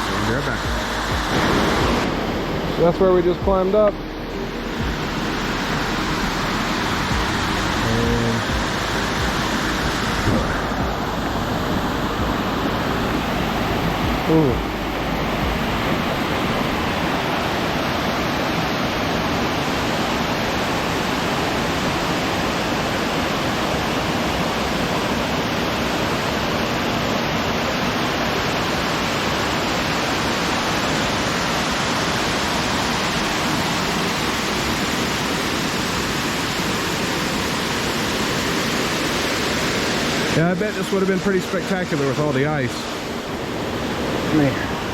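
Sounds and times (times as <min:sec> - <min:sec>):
waterfall rushing: 0:00.0 - 0:44.9.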